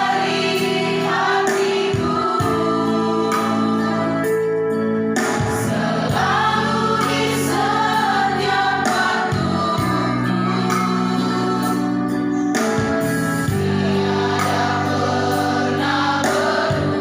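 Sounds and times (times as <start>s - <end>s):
choir singing a hymn: 0.0s - 12.6s, 13.4s - 17.0s
musical accompaniment: 0.0s - 17.0s.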